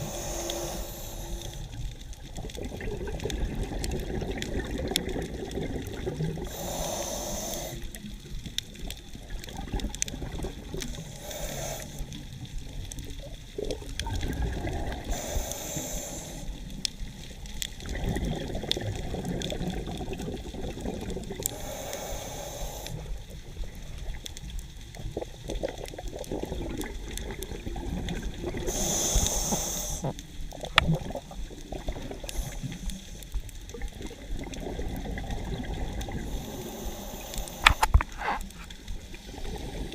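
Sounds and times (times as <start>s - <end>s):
faint crackling clicks: 0.0s - 39.9s
diver exhaling bubbles: 2.4s - 6.8s, 13.7s - 15.3s, 17.8s - 21.4s, 30.0s - 32.6s, 33.7s - 38.6s, 39.3s - 39.9s
low underwater rumble: 30.0s - 39.9s.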